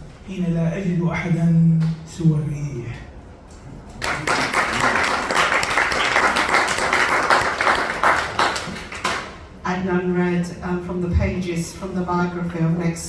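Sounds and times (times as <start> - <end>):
audience applauding: 4.0 - 9.4.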